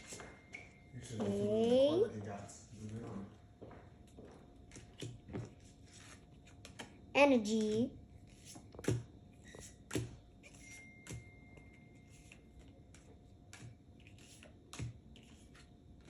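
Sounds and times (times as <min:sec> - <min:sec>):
trading cards tapping and sliding: 0:07.6 - 0:16.0.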